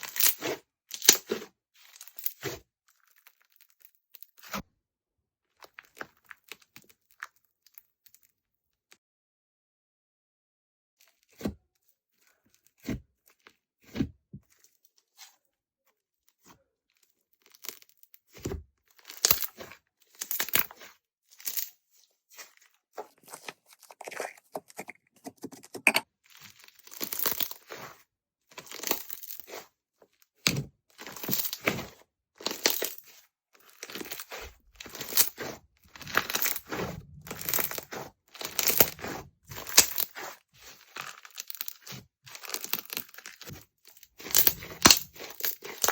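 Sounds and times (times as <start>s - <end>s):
slime crackling and popping: 44.1s - 45.9s.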